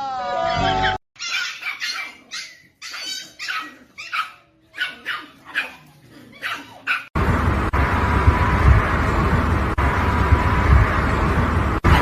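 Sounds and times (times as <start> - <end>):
dog barking: 1.2 - 7.1.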